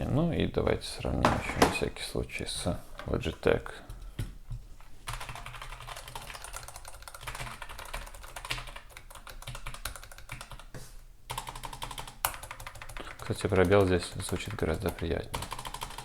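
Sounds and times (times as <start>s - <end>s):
fast typing on computer keyboard: 5.1s - 10.7s, 11.3s - 16.0s.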